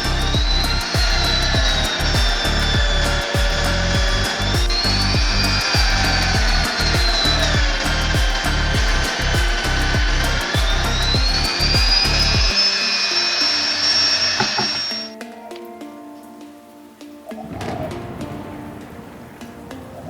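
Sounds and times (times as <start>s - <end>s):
electric power tool whining: 0.0s - 15.1s
background music with steady beat: 0.0s - 20.0s.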